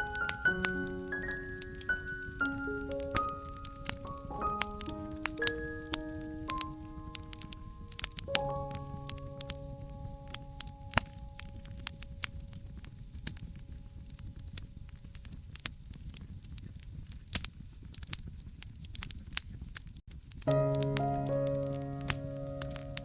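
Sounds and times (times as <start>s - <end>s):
soft music chord: 0.0s - 12.6s, 20.5s - 23.0s
wood fire crackling: 0.0s - 23.0s.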